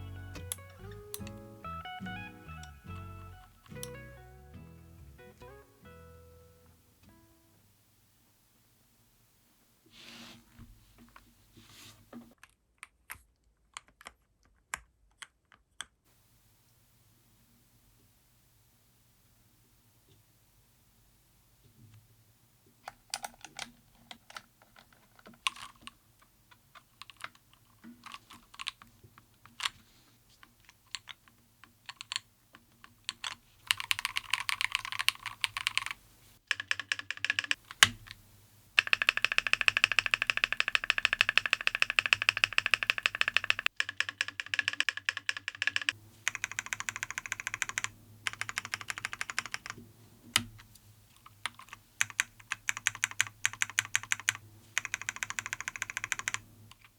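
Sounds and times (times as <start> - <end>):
mechanical keyboard typing: 22.9 - 26.0, 26.6 - 28.9, 30.6 - 50.6, 51.2 - 56.9.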